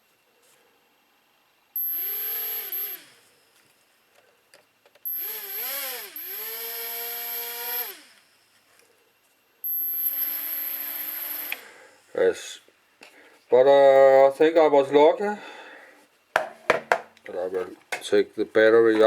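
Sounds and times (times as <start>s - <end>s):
quadcopter motors whining: 1.8s - 3.3s, 5.0s - 8.4s, 9.6s - 11.8s.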